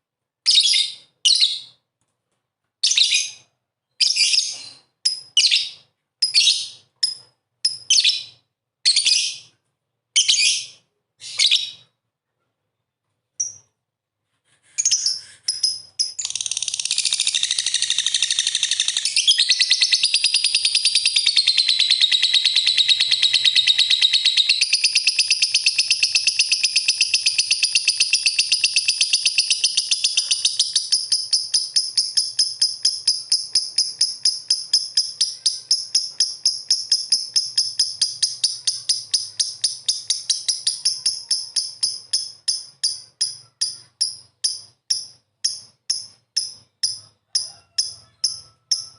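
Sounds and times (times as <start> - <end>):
bird chattering and chirping: 14.9 - 48.9.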